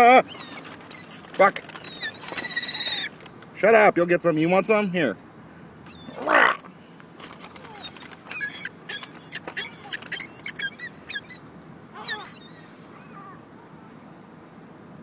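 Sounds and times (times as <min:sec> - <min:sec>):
birds chirping and squeaking: 0:00.0 - 0:03.5, 0:05.8 - 0:14.0.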